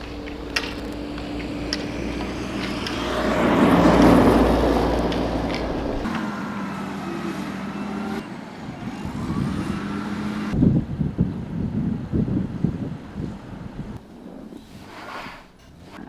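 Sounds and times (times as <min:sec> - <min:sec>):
knocks and bumps: 0:00.0 - 0:06.2
vehicle engines humming: 0:00.0 - 0:11.5.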